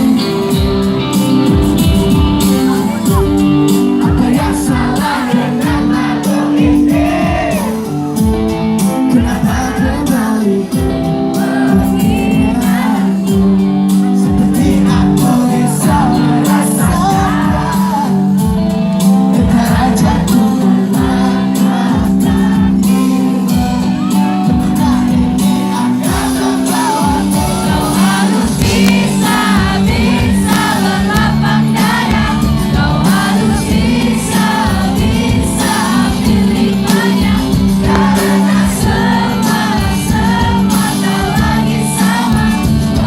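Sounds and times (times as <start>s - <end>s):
drums beating: 0.0s - 18.6s, 21.9s - 43.0s
lead singer singing: 0.0s - 43.0s
live pop-rock band: 0.0s - 43.0s
audience shouting: 4.1s - 8.0s.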